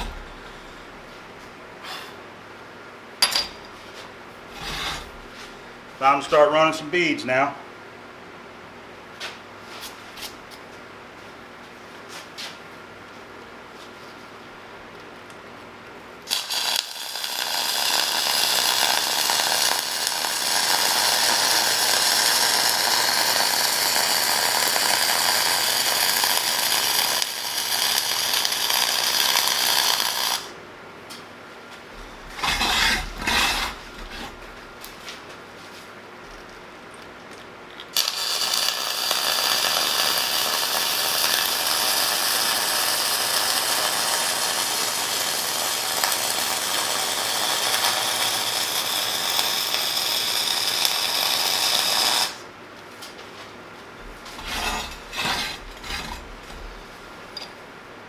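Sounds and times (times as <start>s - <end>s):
welding arc: 16.3s - 30.6s, 32.3s - 34.3s, 37.9s - 52.5s, 54.4s - 56.3s.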